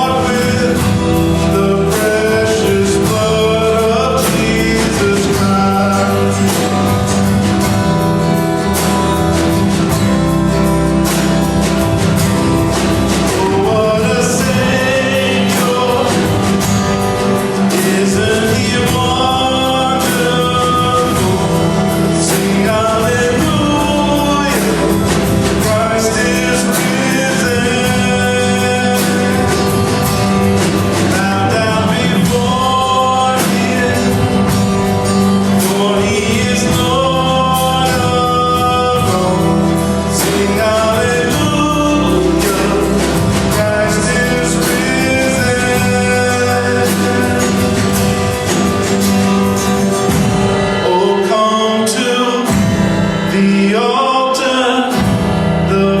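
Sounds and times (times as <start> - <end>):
person singing a hymn: 0.0 - 8.7, 11.6 - 50.0, 50.6 - 56.0
acoustic guitar strumming: 0.0 - 56.0.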